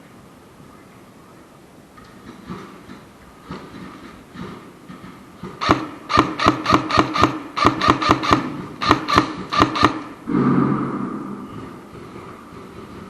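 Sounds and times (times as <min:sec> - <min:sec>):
airsoft guns firing sharp shots: 0:05.4 - 0:10.3.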